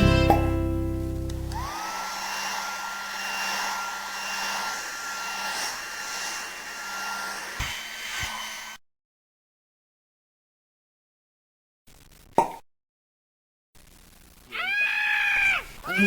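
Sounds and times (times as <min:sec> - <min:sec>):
rushing air hiss: 0:01.5 - 0:08.8.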